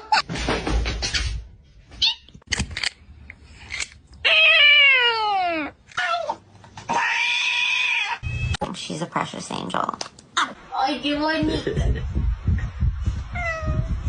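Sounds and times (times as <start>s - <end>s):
cat meowing: 4.2s - 8.2s, 13.4s - 13.9s.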